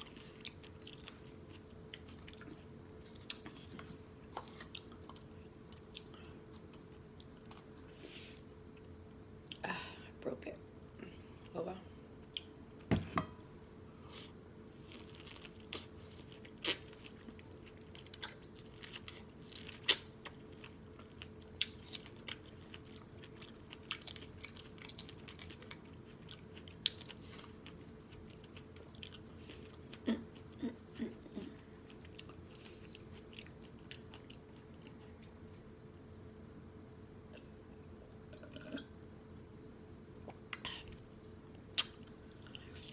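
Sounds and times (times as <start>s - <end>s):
wet chewing and lip-smacking: 14.8s - 35.4s.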